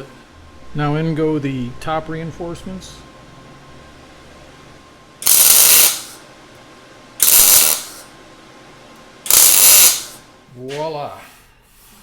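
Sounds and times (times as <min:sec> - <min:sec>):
welding arc crackle: 0:05.2 - 0:06.2, 0:07.2 - 0:08.0, 0:09.3 - 0:10.2.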